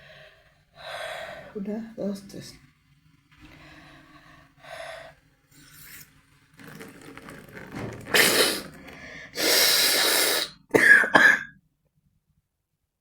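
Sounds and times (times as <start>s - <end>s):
woman blowing air through nose: 8.0s - 10.7s
short breaths: 8.2s - 10.6s.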